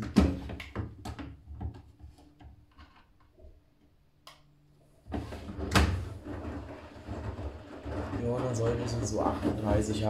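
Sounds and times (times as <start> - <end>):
drawer rattling: 5.2 - 10.0.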